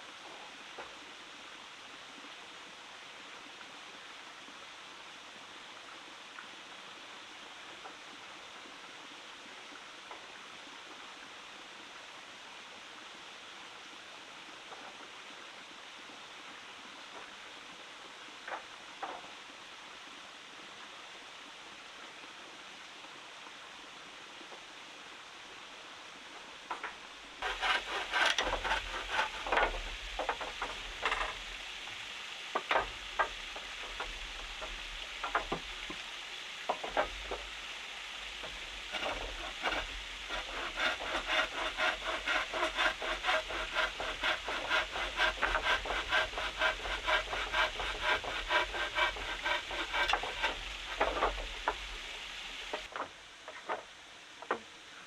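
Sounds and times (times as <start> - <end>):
steady low hiss: 0.0 - 55.0
hand tool rasping on wood: 27.4 - 31.6, 32.6 - 35.7, 38.3 - 52.9.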